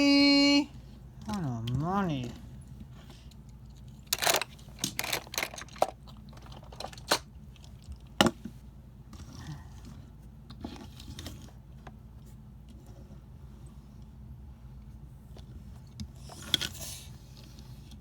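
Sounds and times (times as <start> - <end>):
sharp clicks and crunches: 3.7 - 8.2.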